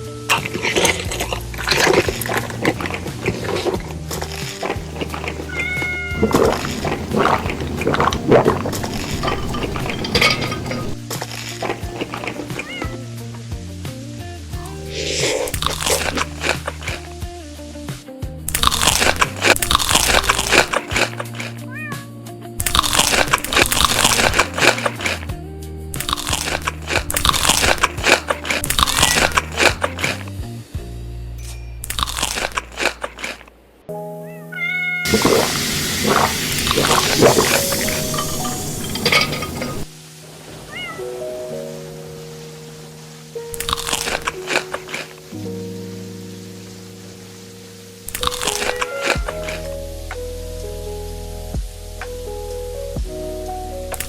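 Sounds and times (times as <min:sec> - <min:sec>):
chewing and slurping: 0:00.0 - 0:13.0, 0:14.6 - 0:17.2, 0:18.5 - 0:21.7, 0:22.6 - 0:25.3, 0:26.0 - 0:30.4, 0:31.9 - 0:33.5, 0:35.1 - 0:39.9, 0:43.6 - 0:45.2, 0:48.1 - 0:49.8
cat meowing: 0:05.0 - 0:10.9, 0:11.9 - 0:13.1, 0:21.6 - 0:22.1, 0:34.2 - 0:35.2, 0:40.6 - 0:41.2, 0:48.4 - 0:49.7
high-pitched cry: 0:05.4 - 0:06.4, 0:12.5 - 0:13.0, 0:48.5 - 0:49.7
background music with steady beat: 0:25.2 - 0:26.9, 0:49.7 - 0:54.0.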